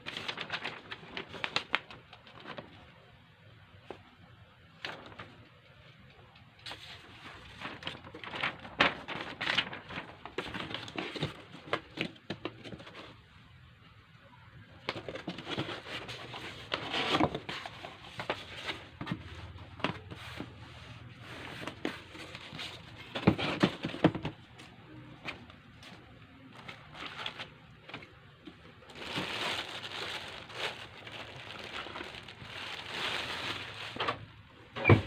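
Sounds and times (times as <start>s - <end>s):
packaging crinkling: 0.0s - 2.8s, 7.4s - 13.0s, 26.4s - 34.3s.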